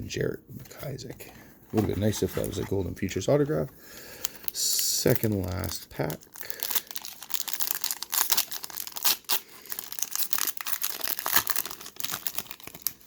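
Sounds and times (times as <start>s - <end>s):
wrapper being torn and crinkled: 4.2s - 13.0s.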